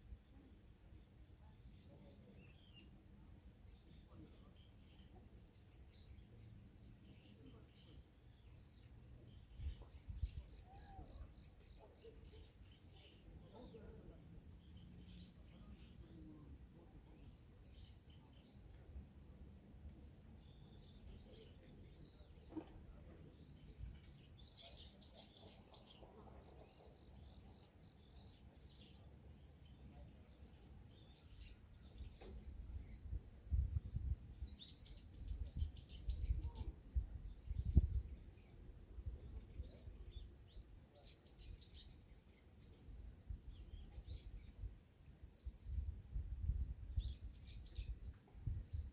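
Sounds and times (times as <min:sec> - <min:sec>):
crickets chirping: 0:00.0 - 0:48.9
wind buffeting microphone: 0:35.2 - 0:38.2.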